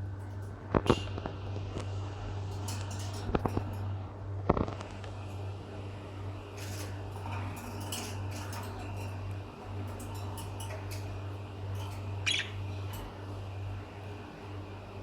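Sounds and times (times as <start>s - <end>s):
steady low hum: 0.0s - 15.0s
birds clicking and chirping: 6.0s - 15.0s.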